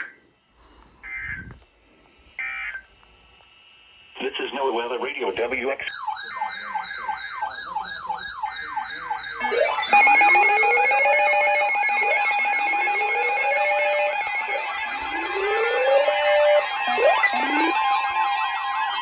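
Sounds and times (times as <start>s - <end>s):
layered alarm with rising wail: 5.9s - 19.0s
electronic siren yelping: 6.2s - 19.0s.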